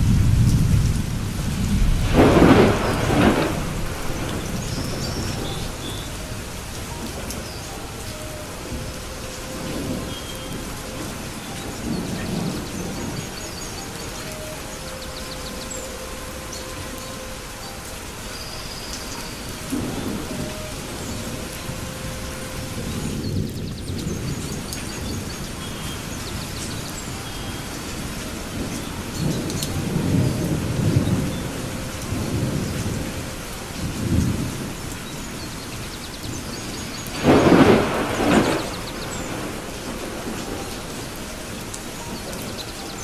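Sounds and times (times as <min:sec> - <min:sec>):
sharp thunderclap: 0:00.0 - 0:07.3, 0:37.1 - 0:40.6
rolling thunder: 0:00.0 - 0:43.0
steady rain: 0:00.0 - 0:43.0.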